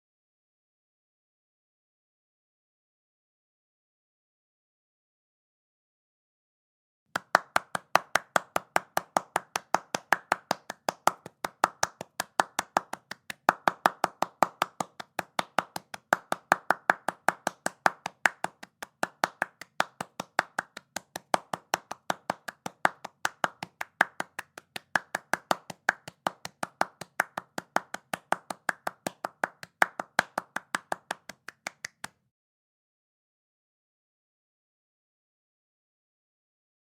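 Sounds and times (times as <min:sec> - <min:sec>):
person clapping hands: 0:07.2 - 0:32.2.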